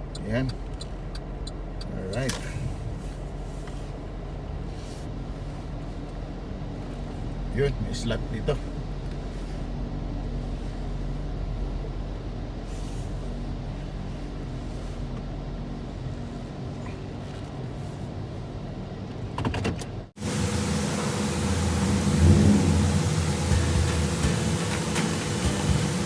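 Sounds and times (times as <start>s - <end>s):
car engine running: 0.0s - 26.0s
loud noisy steady sound: 20.2s - 26.0s.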